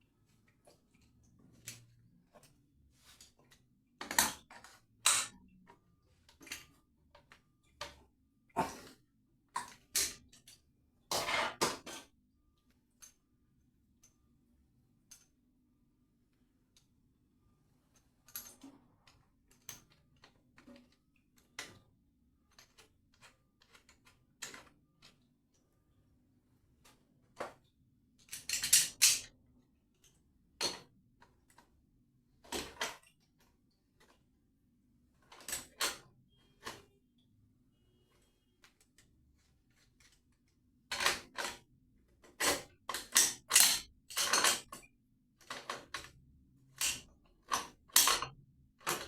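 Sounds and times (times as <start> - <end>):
tools clicking and knocking: 3.2 - 8.0, 19.5 - 21.8, 28.2 - 29.4, 30.0 - 31.7, 40.0 - 49.0
clicks and knocks of objects handled: 26.8 - 29.4, 39.7 - 49.0.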